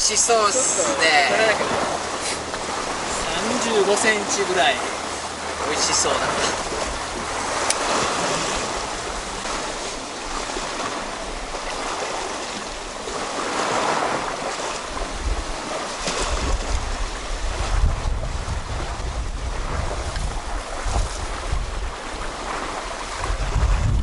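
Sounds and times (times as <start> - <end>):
waves washing on rocky shore: 0.0 - 24.0
wind buffeting microphone: 0.0 - 24.0.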